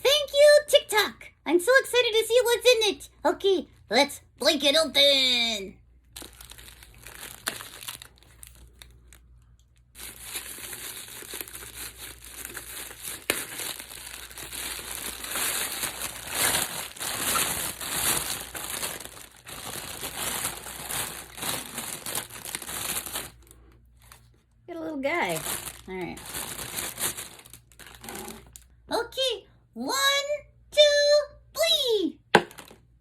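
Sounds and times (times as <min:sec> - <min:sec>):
crinkly packaging being crumpled: 0:06.0 - 0:24.4, 0:25.2 - 0:28.7, 0:32.5 - 0:32.9.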